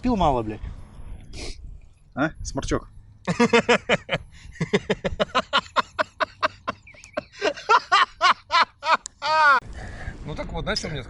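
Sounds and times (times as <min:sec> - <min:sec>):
men laughing hard: 0:03.3 - 0:09.6.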